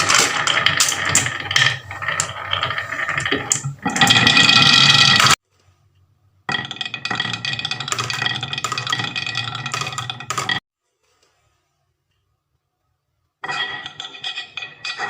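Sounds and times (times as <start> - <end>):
marbles rattling down wooden run: 0.0 - 5.4, 6.5 - 10.6.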